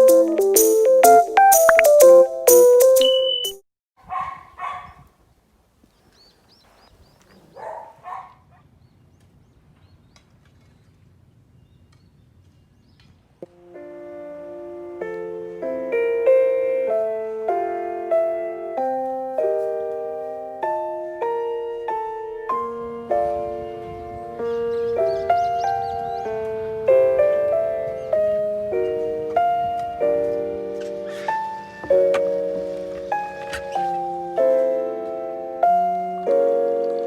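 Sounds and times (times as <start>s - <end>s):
soft piano chords: 0.0s - 3.6s, 13.4s - 37.0s
dog barking: 4.0s - 5.0s, 7.4s - 8.7s
birds chirping faintly: 21.0s - 37.0s.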